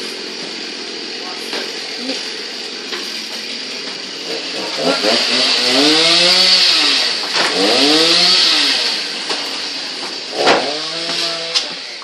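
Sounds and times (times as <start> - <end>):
chainsaw revving: 4.1 - 12.0.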